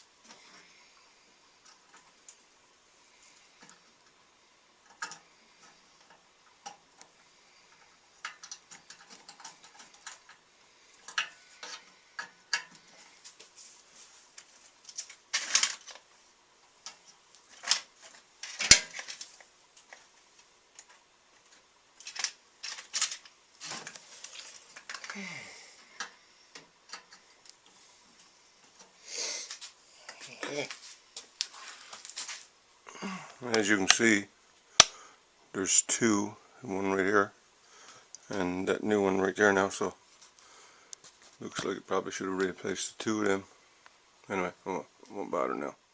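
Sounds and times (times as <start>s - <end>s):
light metallic clicks and clatter: 7.7s - 10.4s.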